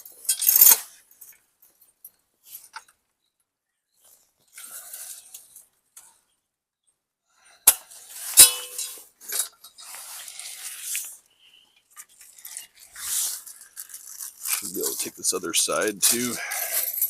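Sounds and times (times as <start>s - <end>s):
metal chain clanking: 0.0s - 1.4s, 16.0s - 17.0s
rustling: 8.0s - 17.0s.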